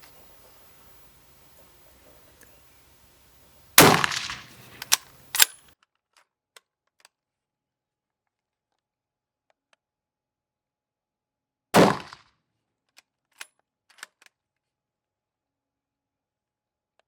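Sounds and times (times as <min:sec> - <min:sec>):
rifle shot with echo: 0:00.0 - 0:05.6, 0:11.8 - 0:12.2.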